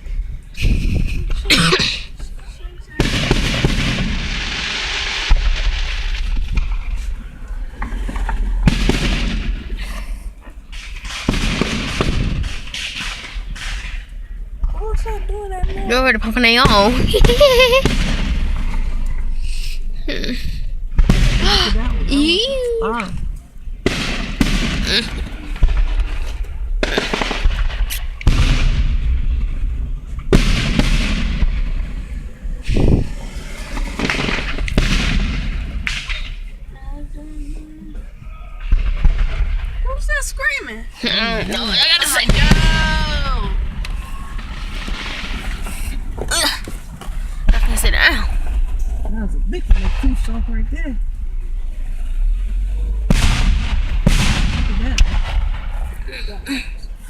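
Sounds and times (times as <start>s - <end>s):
firework bangs: 0.6s - 57.0s
long rumble: 13.3s - 40.3s, 42.2s - 57.0s
small firework pops: 23.8s - 29.5s.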